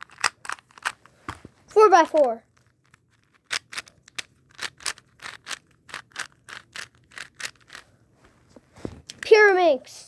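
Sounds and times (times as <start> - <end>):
puzzle cube plastic clicks: 0.0 - 1.4, 2.0 - 7.8.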